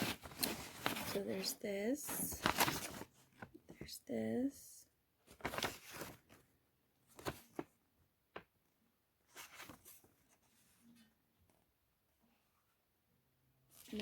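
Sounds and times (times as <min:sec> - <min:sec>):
paper pages rustling: 0:00.0 - 0:03.8, 0:05.2 - 0:06.5, 0:07.1 - 0:07.8, 0:09.3 - 0:11.0.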